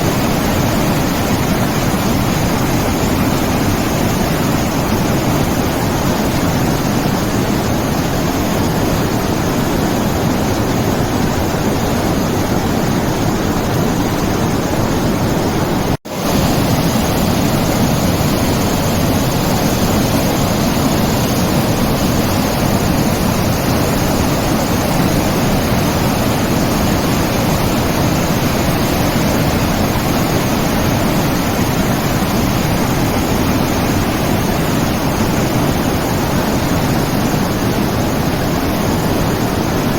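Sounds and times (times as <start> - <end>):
steady rushing noise: 0.0 - 39.9.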